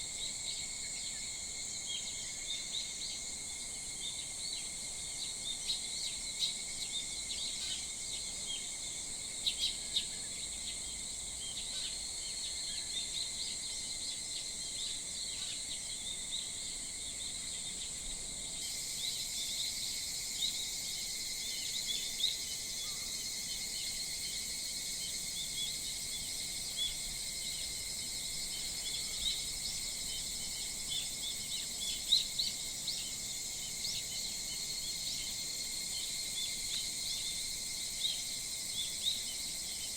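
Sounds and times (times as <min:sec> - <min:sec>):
high insect drone: 0:00.0 - 0:39.9.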